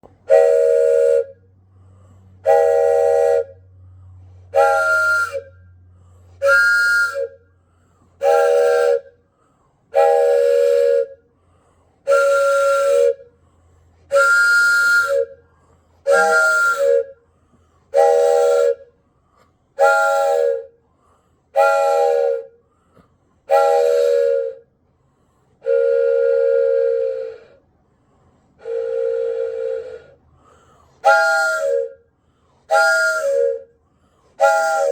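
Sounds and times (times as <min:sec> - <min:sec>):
wooden train whistle blasts: 0:00.0 - 0:01.7, 0:02.3 - 0:09.2, 0:09.9 - 0:11.4, 0:12.0 - 0:13.4, 0:14.0 - 0:17.3, 0:17.9 - 0:19.0, 0:19.8 - 0:20.8, 0:21.5 - 0:22.7, 0:23.4 - 0:24.8, 0:25.6 - 0:27.7, 0:28.6 - 0:34.9.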